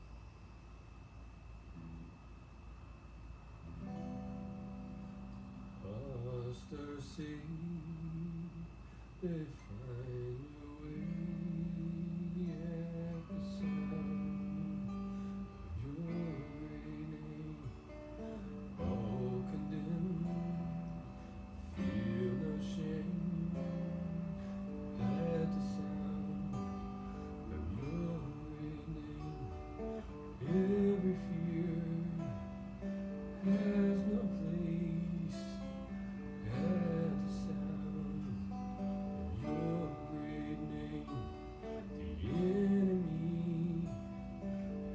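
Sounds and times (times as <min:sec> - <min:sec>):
acoustic guitar strumming: 0:01.7 - 0:44.9
person singing or humming: 0:05.8 - 0:44.9.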